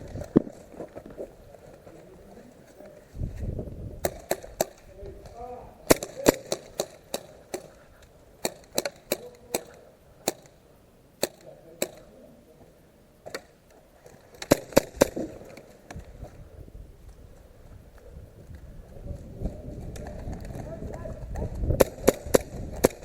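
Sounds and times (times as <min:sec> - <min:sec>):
airsoft gun shots: 0:04.0 - 0:04.8, 0:05.8 - 0:07.7, 0:08.4 - 0:10.5, 0:11.2 - 0:12.0, 0:14.4 - 0:15.5, 0:21.7 - 0:23.0.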